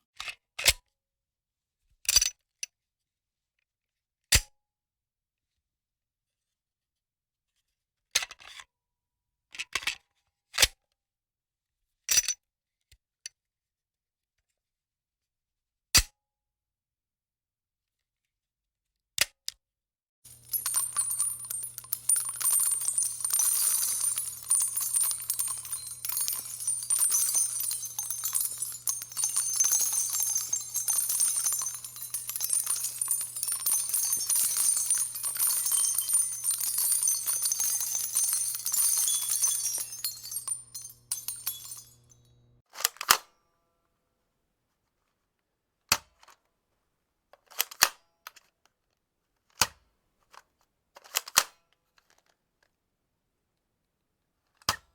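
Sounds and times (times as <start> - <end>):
shell casings clinking: 20.3 - 42.0.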